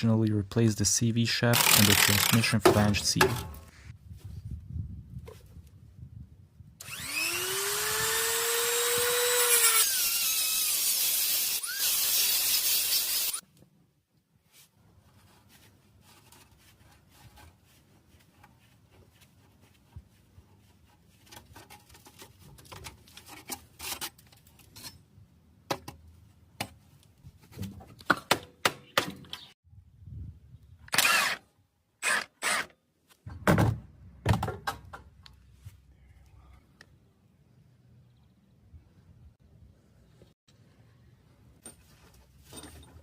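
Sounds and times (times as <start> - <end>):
power tool whining: 6.8 - 13.4, 30.9 - 31.4.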